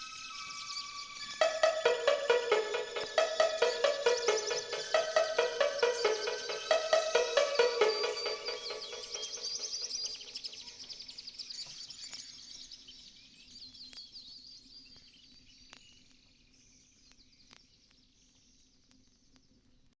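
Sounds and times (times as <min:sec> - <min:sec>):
dance music beat: 0:01.4 - 0:09.9.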